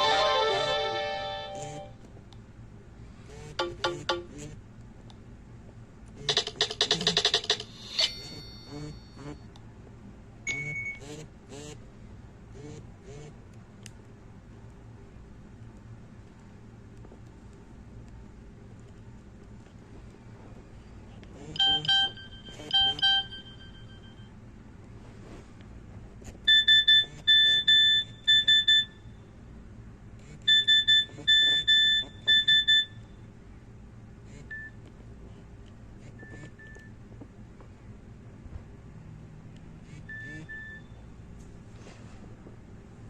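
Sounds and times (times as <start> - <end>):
phone ringtone: 0.0 - 1.9, 3.6 - 4.3, 6.3 - 9.3, 21.6 - 24.3
short electronic beeps: 21.6 - 24.3, 30.5 - 33.0, 40.1 - 40.9.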